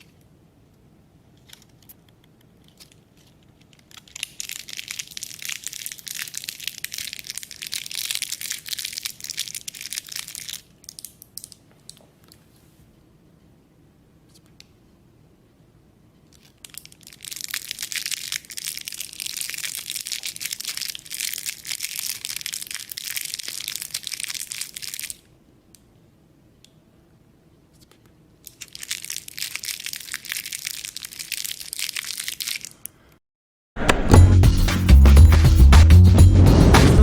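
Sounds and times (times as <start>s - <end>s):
plastic wrapper crinkling: 1.3s - 12.4s, 16.3s - 25.3s, 28.4s - 33.1s.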